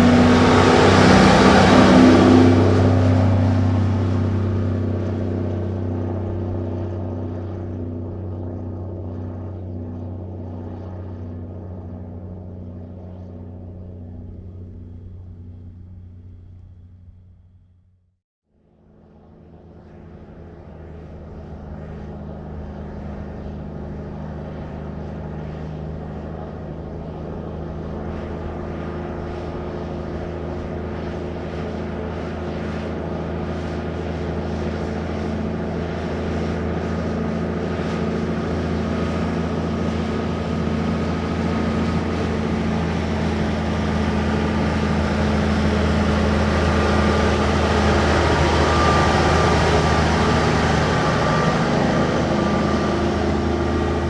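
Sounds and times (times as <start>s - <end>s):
truck engine driving by: 0.0s - 7.6s, 37.6s - 54.0s.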